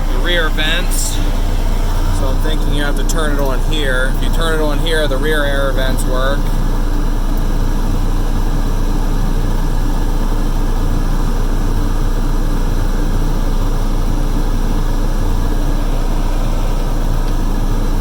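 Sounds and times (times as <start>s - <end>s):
cab air blower: 0.0s - 3.8s, 15.3s - 18.0s
excavator diesel engine idling: 0.0s - 18.0s.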